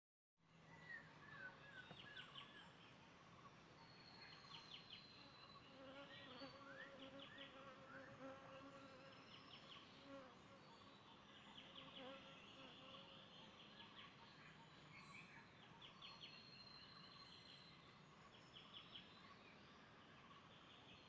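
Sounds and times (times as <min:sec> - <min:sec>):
birds chirping and trilling: 0:00.4 - 0:21.0
insect buzz: 0:04.9 - 0:13.4.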